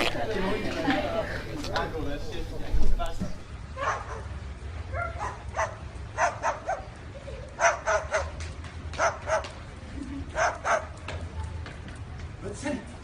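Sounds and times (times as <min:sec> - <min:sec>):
dog barking: 0:03.8 - 0:04.3, 0:04.9 - 0:06.9, 0:07.6 - 0:08.4, 0:09.0 - 0:09.5, 0:10.4 - 0:10.9.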